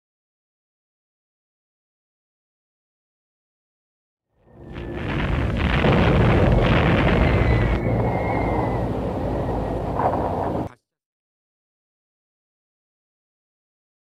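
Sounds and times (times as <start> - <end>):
bomber engines rumbling: 4.4 - 10.8.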